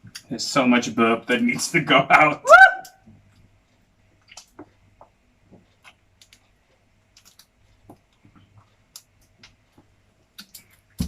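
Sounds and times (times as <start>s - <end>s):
faint small clicks and ticks: 3.2s - 11.0s.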